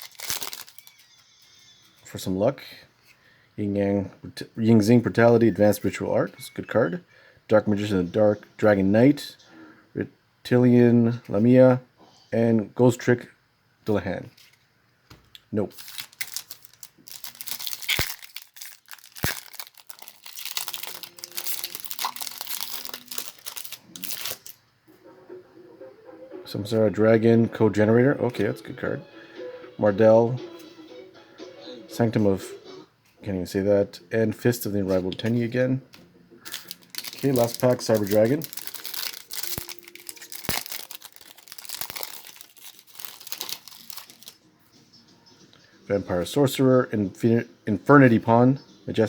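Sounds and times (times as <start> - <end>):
wrapper being torn open: 0.0 - 1.0, 15.7 - 24.6, 36.5 - 44.4
foil wrapper crinkling: 0.0 - 1.1, 15.7 - 24.6, 36.4 - 44.4.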